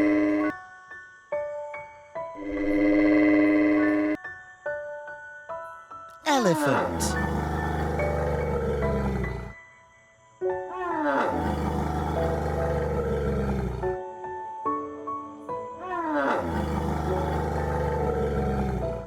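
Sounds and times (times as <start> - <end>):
background music: 0.0 - 19.0
elephant rising and falling call: 6.3 - 9.5
elephant rumbling: 6.4 - 9.6, 11.0 - 14.0, 16.1 - 19.0.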